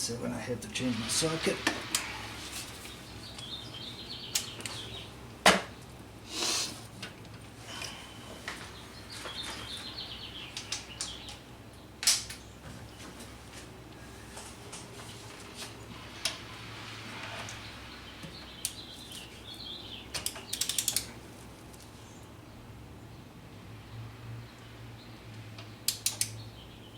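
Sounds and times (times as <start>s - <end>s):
socket ratchet clicking: 20.2s - 21.1s, 25.9s - 26.4s.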